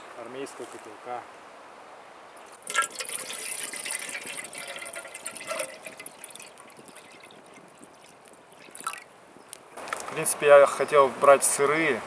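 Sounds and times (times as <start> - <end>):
water pouring into metal tin: 2.6 - 9.0.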